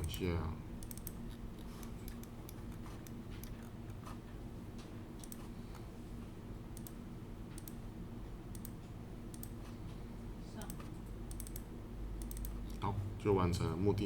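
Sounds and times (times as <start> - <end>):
steady low hum: 0.0 - 14.0
mouse and keyboard clicks: 12.2 - 12.8.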